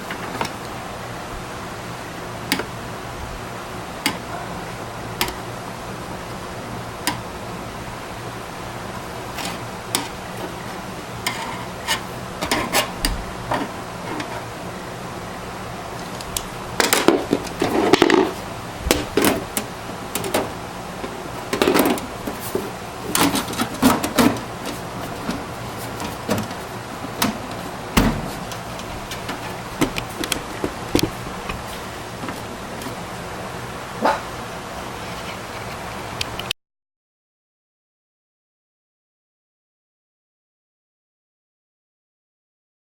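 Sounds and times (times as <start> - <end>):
steady low hum: 0.0 - 36.4
computer parts clicking and knocking: 16.8 - 20.5.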